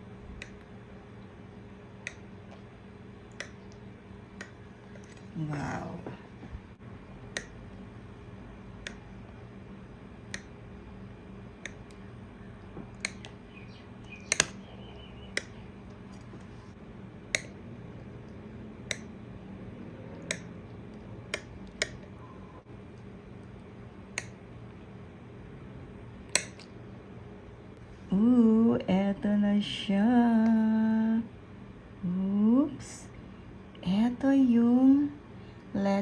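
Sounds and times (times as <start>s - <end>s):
low steady hum: 0.0s - 36.0s
knife clicking on a plate: 14.3s - 14.6s, 17.4s - 17.6s, 26.3s - 26.7s.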